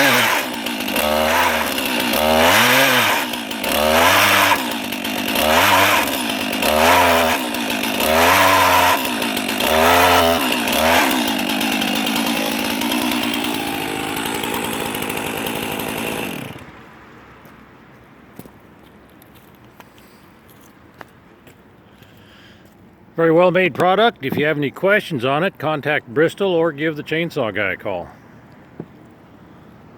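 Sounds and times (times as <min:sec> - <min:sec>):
chainsaw engine revving: 0:00.0 - 0:16.8.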